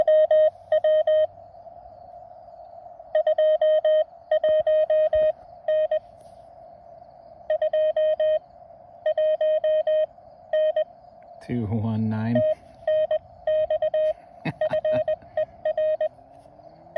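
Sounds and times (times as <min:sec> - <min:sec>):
morse code tone: 0:00.0 - 0:01.3, 0:03.2 - 0:06.1, 0:07.5 - 0:08.4, 0:09.1 - 0:10.9, 0:12.1 - 0:16.1
receiver hiss: 0:00.0 - 0:16.5.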